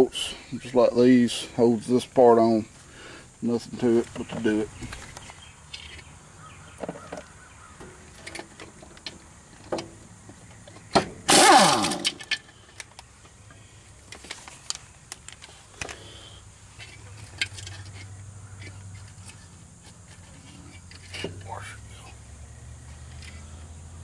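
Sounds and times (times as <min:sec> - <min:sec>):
power tool burst winding down: 0:11.3 - 0:12.2
metal tools clinking on bolts: 0:16.8 - 0:21.6.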